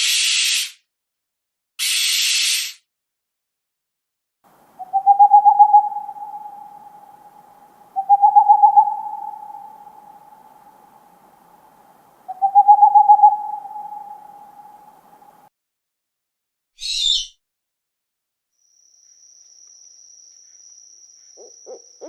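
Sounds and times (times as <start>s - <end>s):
short high hiss: 0.0s - 0.8s, 1.8s - 2.8s
owl hooting: 4.8s - 15.5s, 16.8s - 17.3s, 21.4s - 22.0s.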